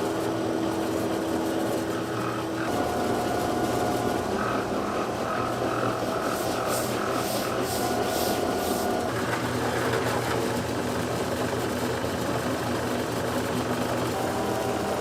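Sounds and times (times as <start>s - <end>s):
machine hum: 0.0s - 11.4s, 13.9s - 15.0s.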